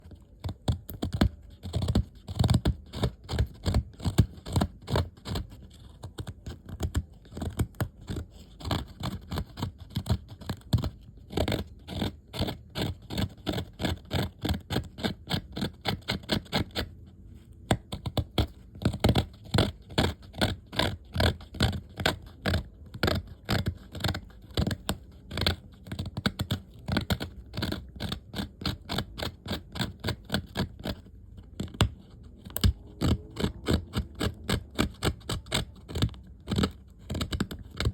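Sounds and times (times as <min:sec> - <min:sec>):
blade scraping wood: 0:17.7 - 0:37.9.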